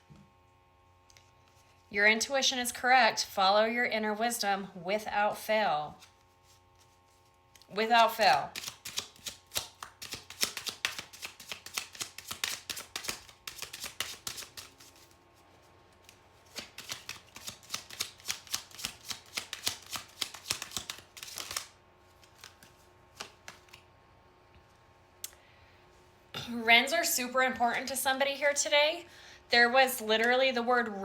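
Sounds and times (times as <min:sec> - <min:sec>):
cards being shuffled: 0:05.9 - 0:23.9
card taps: 0:22.3 - 0:23.8.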